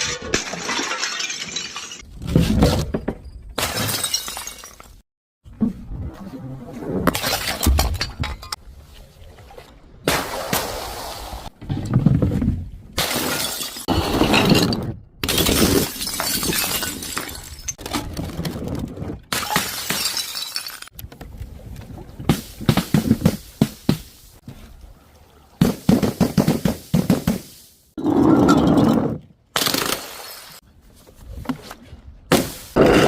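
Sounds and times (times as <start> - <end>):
glass bottles shattering: 0.0 - 2.1, 3.2 - 5.0, 13.0 - 17.8, 19.3 - 20.9.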